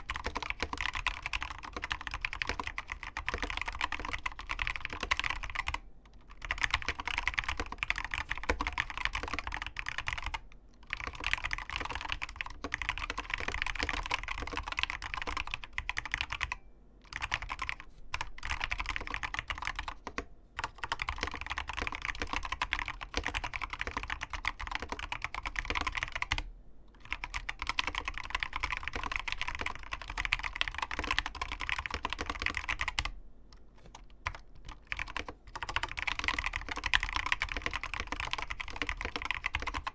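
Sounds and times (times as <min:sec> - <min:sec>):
keyboard typing: 0:00.0 - 0:39.9.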